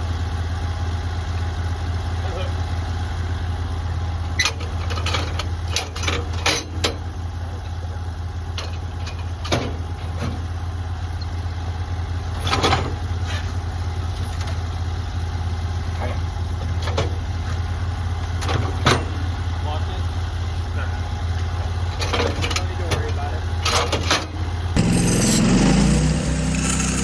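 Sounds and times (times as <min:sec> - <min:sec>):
engine idling: 0:24.5 - 0:27.0.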